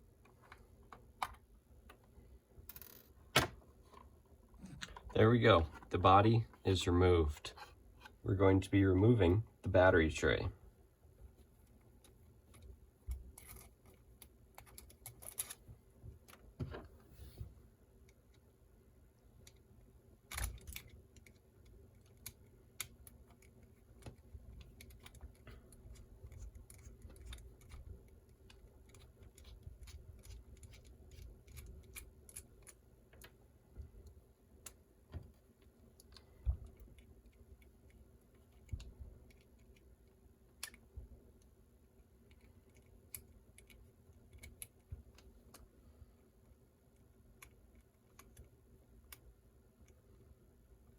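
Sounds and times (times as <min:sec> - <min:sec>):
faint low hum: 0:00.0 - 0:50.9
light clicks and taps of tools: 0:20.3 - 0:45.8.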